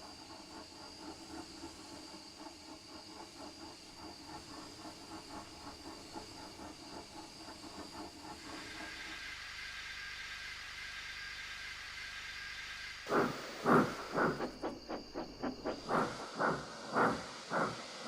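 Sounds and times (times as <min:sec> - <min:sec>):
steam hissing: 0:08.2 - 0:18.0
steam locomotive chuffing: 0:13.1 - 0:18.0.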